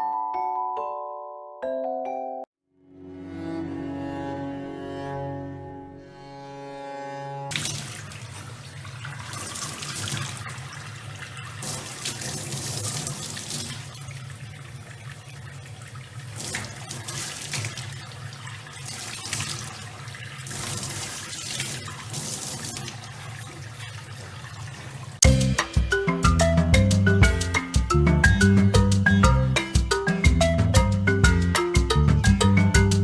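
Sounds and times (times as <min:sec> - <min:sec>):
running water splashing: 0:07.5 - 0:30.3.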